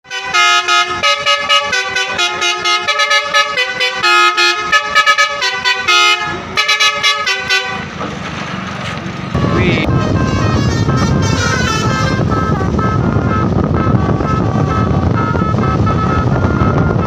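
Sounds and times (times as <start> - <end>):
bus horn playing melody: 0.0 - 8.0, 9.4 - 17.0
low rumble: 9.1 - 17.0.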